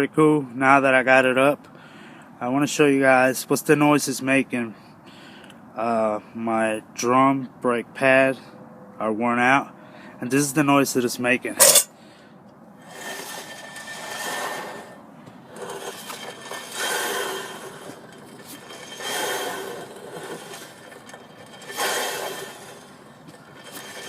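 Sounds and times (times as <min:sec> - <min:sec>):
drum brake scraping: 0:12.8 - 0:24.0.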